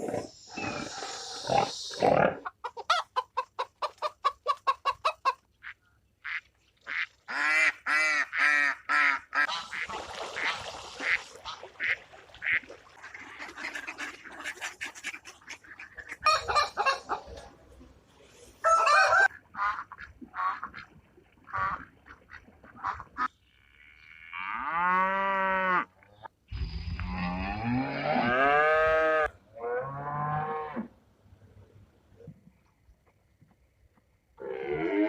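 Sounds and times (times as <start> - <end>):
waterfowl honking: 4.4 - 17.4.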